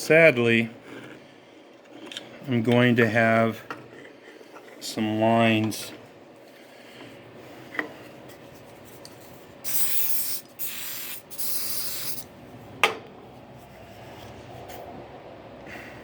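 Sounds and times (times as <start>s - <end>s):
aerosol can spraying: 9.6s - 12.3s.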